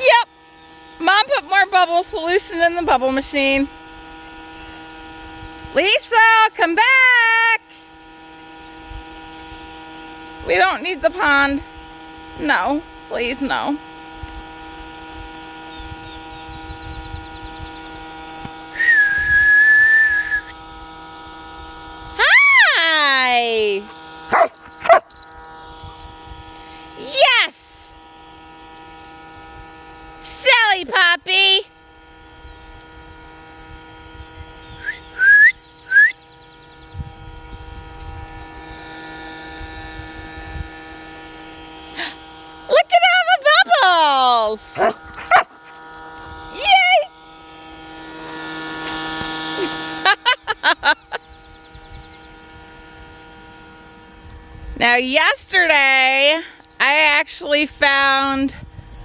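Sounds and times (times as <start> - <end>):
constant hum: 0.0 - 59.0
person whistling high note: 18.8 - 20.5, 34.8 - 36.2.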